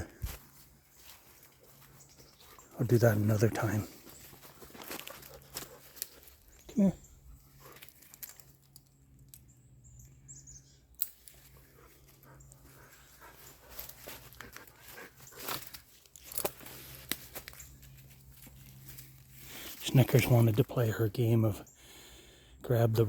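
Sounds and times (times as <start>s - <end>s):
faint scuffling and rustling: 3.8s - 6.6s, 11.2s - 19.8s.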